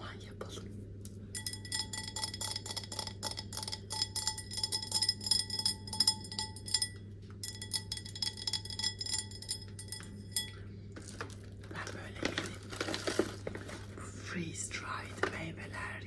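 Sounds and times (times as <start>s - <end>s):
glass ringing: 1.3s - 10.6s
clinking against glass tableware: 1.4s - 10.6s.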